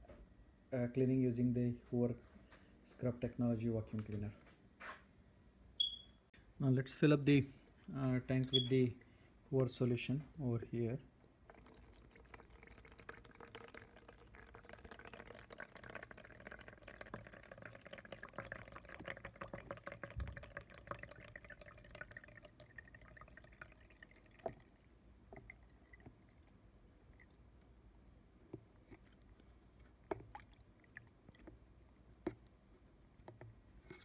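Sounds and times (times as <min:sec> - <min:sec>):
liquid trickling into tank: 0:11.2 - 0:32.3.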